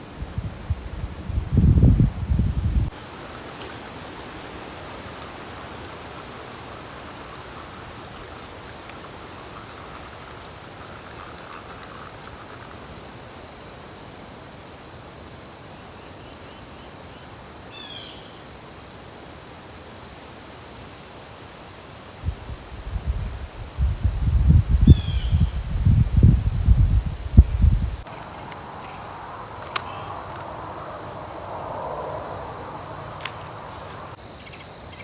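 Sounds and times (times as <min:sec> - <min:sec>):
high insect drone: 0:00.0 - 0:35.0
creek rushing: 0:02.9 - 0:14.4, 0:27.3 - 0:34.2.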